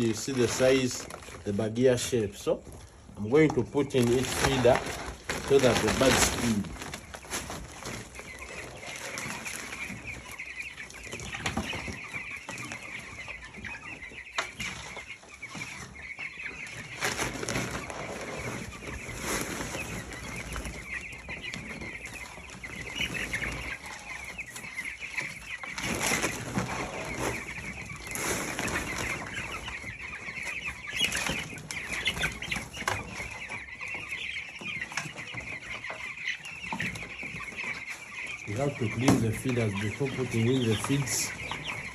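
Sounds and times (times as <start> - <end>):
chicks peeping: 0.0 - 41.9
rustling bursts: 4.0 - 8.2.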